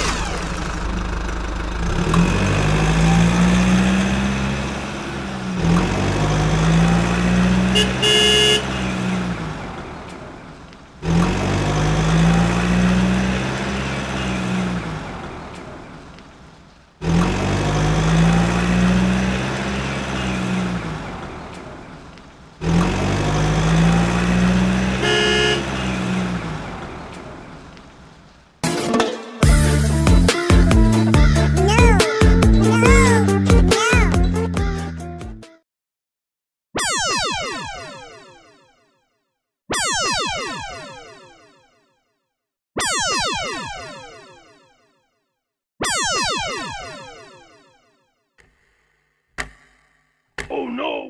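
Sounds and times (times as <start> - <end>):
vehicle engine revving: 0.0 - 16.0, 17.0 - 27.5
horn toot: 7.6 - 9.0, 24.9 - 26.1.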